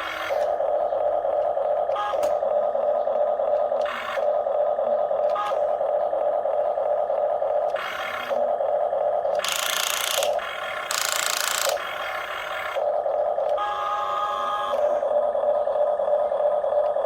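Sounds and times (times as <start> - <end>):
small electric motors whining: 0.0 - 17.0.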